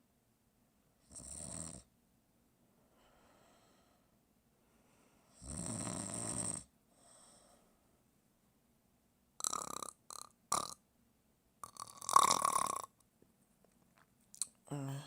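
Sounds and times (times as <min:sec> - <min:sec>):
faint breath: 0:02.8 - 0:05.4, 0:06.9 - 0:08.0
person snoring: 0:05.3 - 0:06.7, 0:09.4 - 0:10.8, 0:11.6 - 0:12.9, 0:14.7 - 0:15.0.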